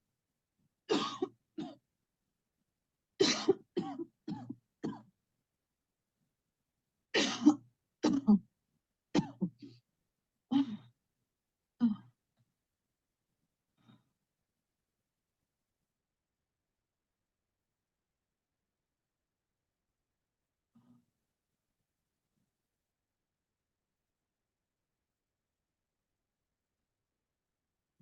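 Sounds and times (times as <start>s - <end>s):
person coughing: 0.9s - 1.8s, 3.2s - 5.1s, 7.2s - 8.4s, 9.2s - 9.7s.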